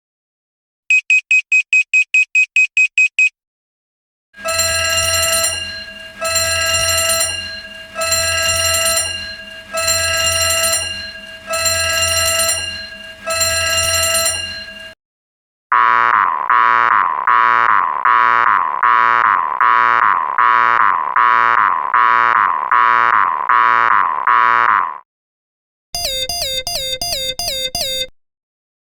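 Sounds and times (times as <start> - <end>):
fast electronic beeping: 4.4 - 14.9, 26.0 - 28.1
alarm tone blasts: 4.4 - 15.0, 26.0 - 28.1
ringing alarm pulsing: 4.4 - 15.0, 26.0 - 28.1.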